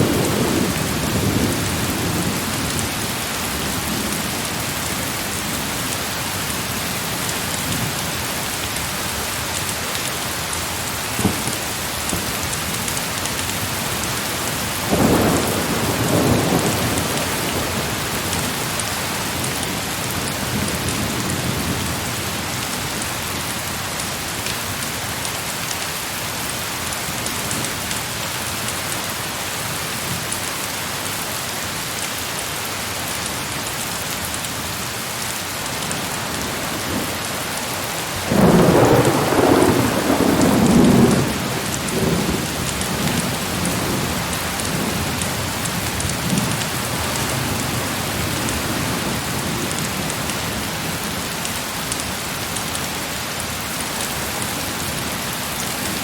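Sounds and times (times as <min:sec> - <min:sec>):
thunder: 0:00.0 - 0:04.4, 0:11.1 - 0:12.9, 0:14.8 - 0:22.1, 0:38.2 - 0:46.6
heavy rain: 0:00.0 - 0:56.0.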